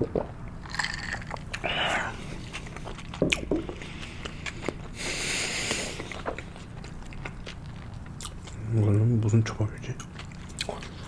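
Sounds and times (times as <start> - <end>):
wet chewing: 2.2 - 9.0, 10.0 - 11.0.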